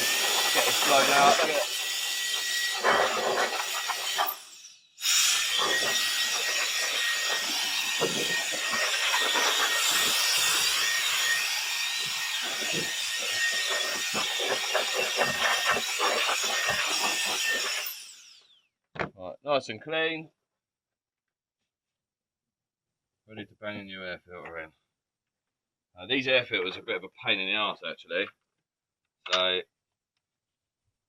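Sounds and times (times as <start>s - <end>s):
air blower blasting: 0.0s - 1.8s, 5.0s - 17.8s.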